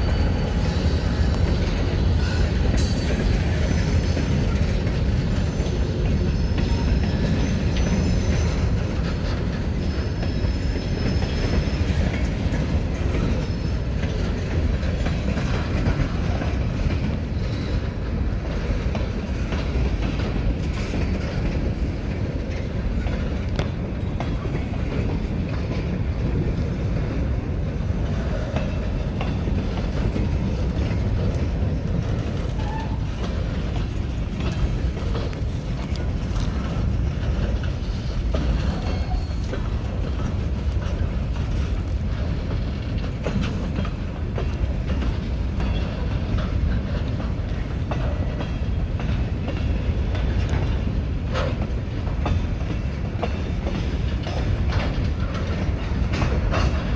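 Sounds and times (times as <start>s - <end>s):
train wheels rumbling on rail: 0.0s - 56.9s
high wheel squeal: 32.5s - 33.6s.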